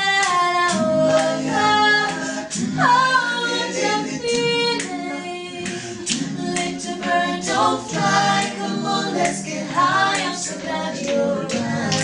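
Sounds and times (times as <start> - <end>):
low voices singing backing part: 0.0 - 12.0.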